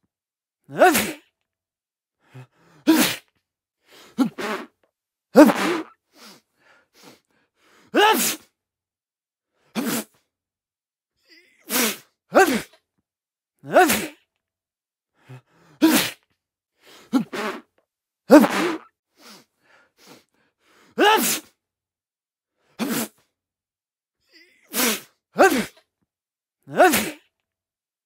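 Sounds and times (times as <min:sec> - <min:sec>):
man sneezing: 0:00.7 - 0:01.3, 0:02.8 - 0:03.3, 0:04.2 - 0:04.7, 0:05.4 - 0:06.0, 0:07.9 - 0:08.5, 0:09.7 - 0:10.2, 0:11.3 - 0:12.8, 0:13.6 - 0:14.3, 0:15.8 - 0:16.3, 0:17.0 - 0:17.7, 0:18.3 - 0:18.9, 0:21.0 - 0:21.6, 0:22.8 - 0:23.3, 0:24.4 - 0:25.9, 0:26.7 - 0:27.3.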